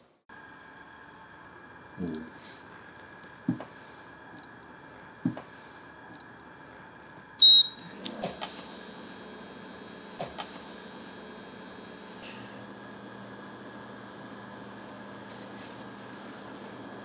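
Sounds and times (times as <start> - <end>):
cooktop electrical whine and fan hum: 0.3 - 17.0
short high beep: 7.4 - 7.7.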